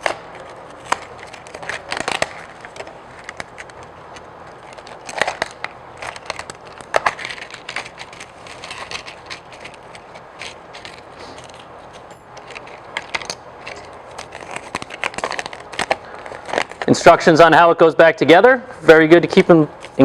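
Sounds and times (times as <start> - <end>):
packaging clicks and crackles: 0.0 - 16.9.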